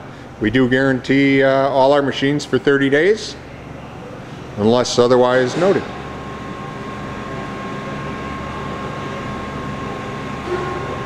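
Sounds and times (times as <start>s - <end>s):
machinery hum with high whine: 0.0s - 11.0s.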